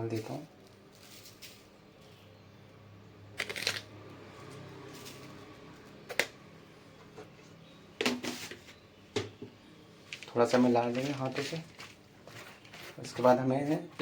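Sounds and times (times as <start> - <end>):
rustles and scrapes of vegetables: 0.0 - 2.4, 3.4 - 6.0, 7.0 - 8.8, 9.9 - 14.0.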